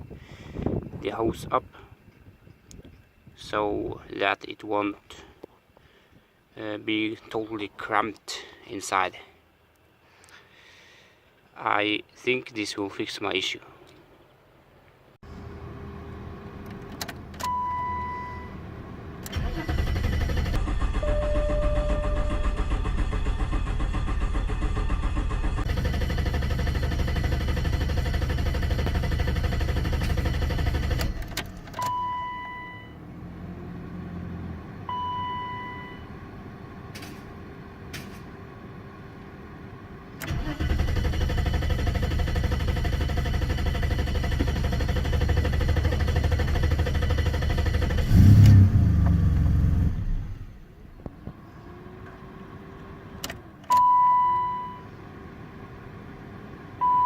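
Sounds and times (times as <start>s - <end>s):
engine cranking on starter: 19.2s - 32.0s, 40.2s - 50.6s
short high beeps: 21.0s - 22.6s, 53.8s - 54.9s.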